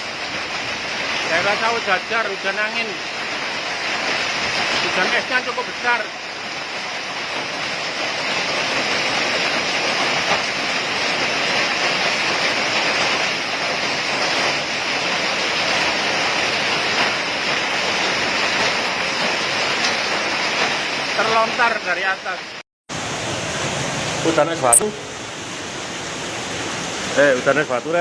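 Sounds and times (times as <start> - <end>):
hailstones ticking: 0.0 - 22.4
hail and rain hissing: 0.0 - 28.0.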